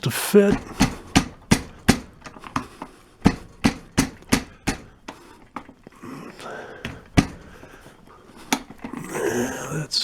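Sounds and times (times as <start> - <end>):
sharp knocks on metal stem: 0.5 - 5.2, 6.8 - 7.7.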